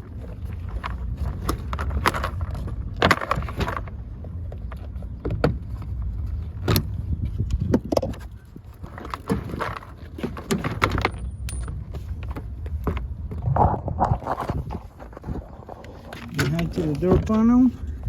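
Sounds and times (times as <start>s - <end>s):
rustling handling noise: 0.0s - 6.7s, 8.2s - 18.0s
low rumble: 11.1s - 17.1s.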